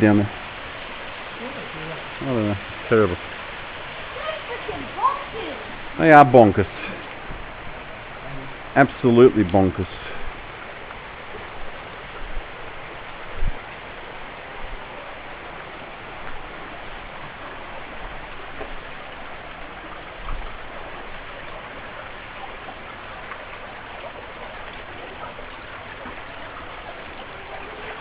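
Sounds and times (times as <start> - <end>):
water rushing over rocks: 0.0 - 28.0.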